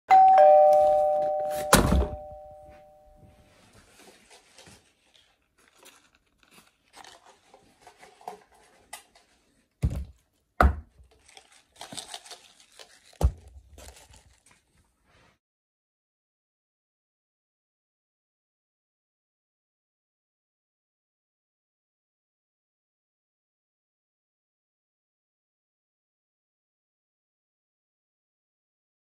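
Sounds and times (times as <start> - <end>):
two-note chime: 0.1 - 3.2
heavy thunk: 1.7 - 2.4.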